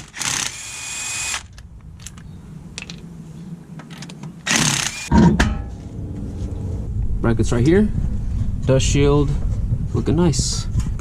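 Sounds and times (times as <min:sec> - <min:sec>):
power tool whining: 0:00.0 - 0:01.6, 0:04.4 - 0:05.1.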